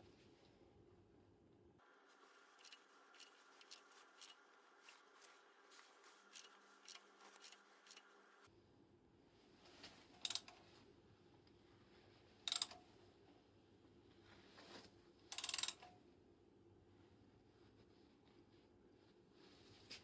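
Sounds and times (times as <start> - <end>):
hand tools clicking and tapping: 2.6 - 4.4, 6.3 - 8.1.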